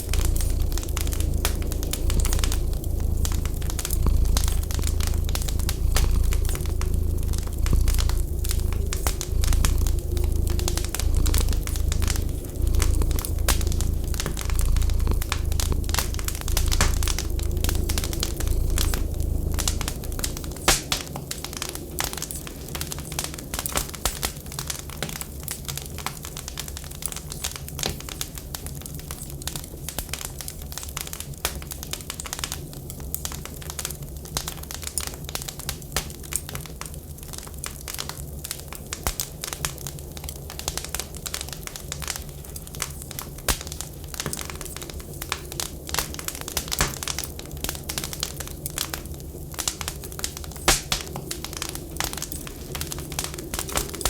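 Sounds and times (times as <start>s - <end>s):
low rumble: 0.0s - 24.6s
wood fire crackling: 0.0s - 54.0s.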